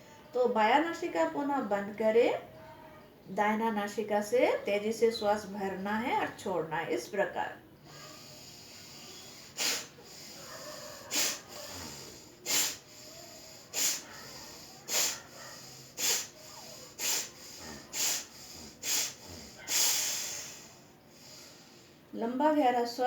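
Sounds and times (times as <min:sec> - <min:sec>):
sharp loud nasal breaths: 0:07.8 - 0:22.1
soft breathing: 0:07.8 - 0:22.1.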